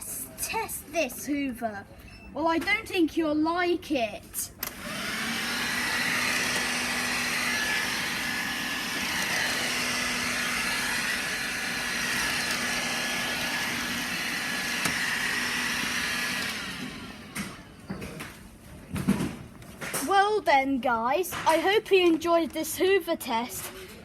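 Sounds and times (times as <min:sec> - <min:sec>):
vacuum cleaner running: 0:04.6 - 0:18.3.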